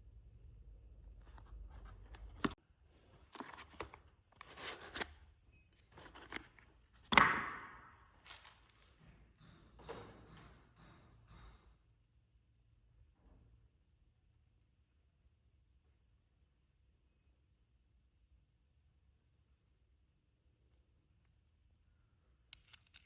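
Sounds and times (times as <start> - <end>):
tools scraping: 3.3 - 7.2.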